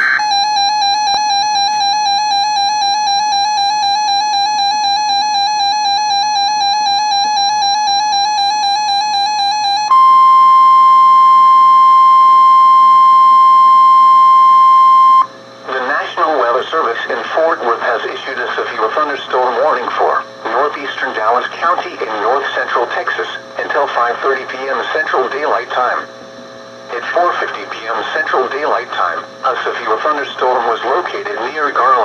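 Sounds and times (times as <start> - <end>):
pulsing electronic alarm beep: 0.0 - 15.3
steady alarm tone: 0.0 - 15.4.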